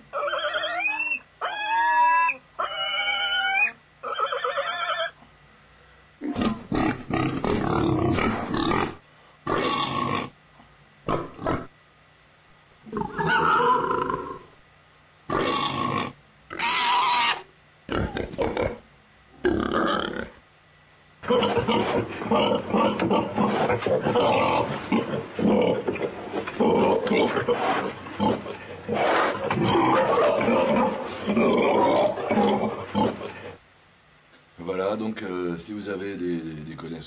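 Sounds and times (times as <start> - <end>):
man imitating pig squeals: 0.1 - 5.2, 12.9 - 14.6, 15.3 - 18.8, 19.4 - 20.4, 21.2 - 25.1, 27.0 - 33.6.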